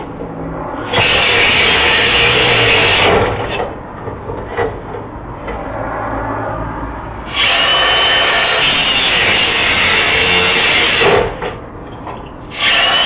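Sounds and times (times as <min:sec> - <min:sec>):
angle grinder cutting metal: 0:00.8 - 0:03.6, 0:07.3 - 0:11.4, 0:12.5 - 0:13.0.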